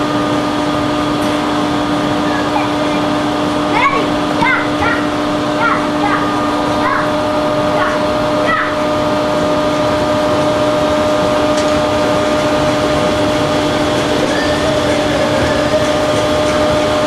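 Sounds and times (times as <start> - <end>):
machine hum: 0.0 - 17.0.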